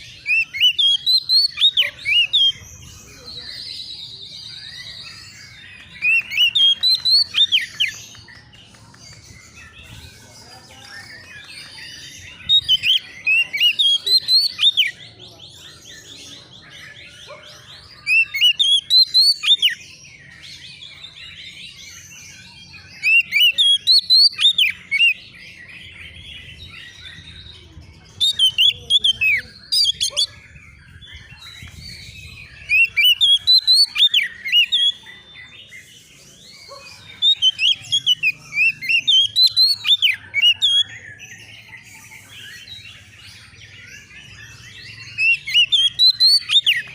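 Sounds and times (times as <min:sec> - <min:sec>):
bird singing whistled phrases: 0:00.2 - 0:03.3, 0:18.0 - 0:19.8, 0:28.2 - 0:35.0, 0:36.7 - 0:41.1, 0:44.0 - 0:46.9.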